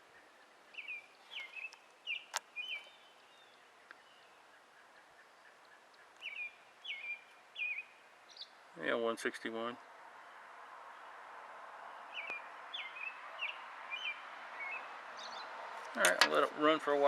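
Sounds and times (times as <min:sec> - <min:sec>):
bird chirping: 0:00.0 - 0:08.8, 0:11.9 - 0:16.5.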